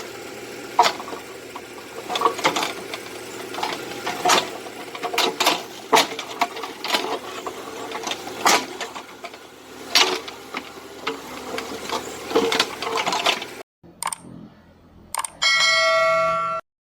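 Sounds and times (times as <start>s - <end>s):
small excavator working: 0.0s - 15.3s
sharp metal clanks: 15.2s - 16.6s.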